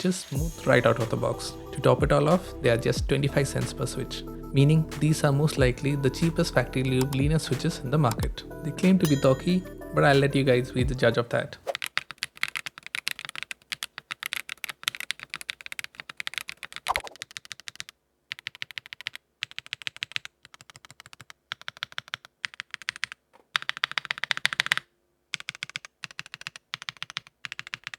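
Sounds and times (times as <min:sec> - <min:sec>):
fast mechanical keyboard typing: 0:11.8 - 0:27.9.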